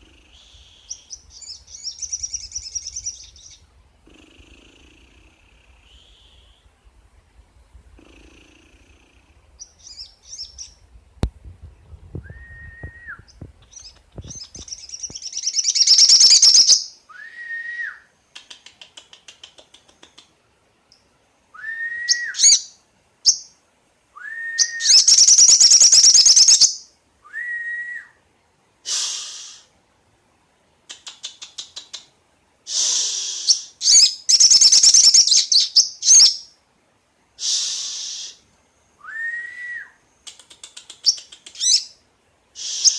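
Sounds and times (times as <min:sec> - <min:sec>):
harsh rattling bird trills: 0:14.6 - 0:16.8, 0:24.9 - 0:26.8, 0:32.7 - 0:36.4
bird whistling: 0:14.7 - 0:18.0, 0:21.6 - 0:22.7, 0:24.2 - 0:28.1, 0:33.8 - 0:36.4.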